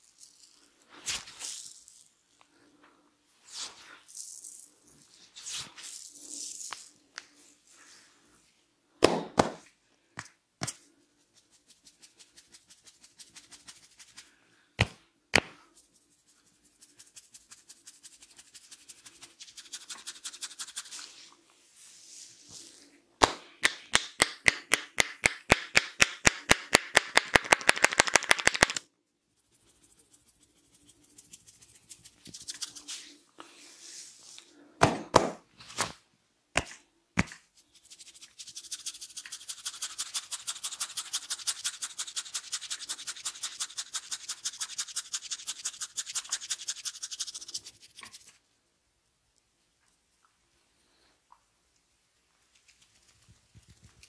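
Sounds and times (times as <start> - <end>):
rapid hand tapping on head: 23.9 - 28.8.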